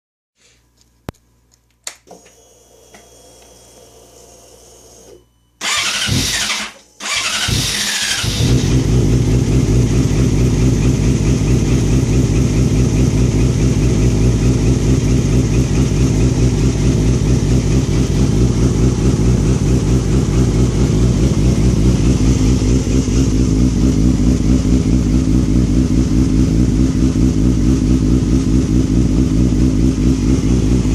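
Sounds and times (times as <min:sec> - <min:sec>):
starter motor cranking: 0:05.6 - 0:08.8
motorcycle engine idling roughly: 0:05.6 - 0:30.9.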